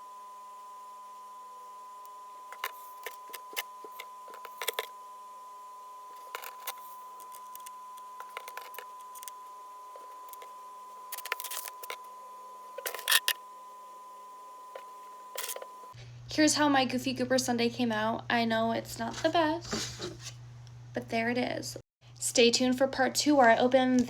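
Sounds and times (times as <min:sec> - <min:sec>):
faint steady hum: 0:00.0 - 0:24.0
plastic pieces clicking: 0:12.8 - 0:13.4.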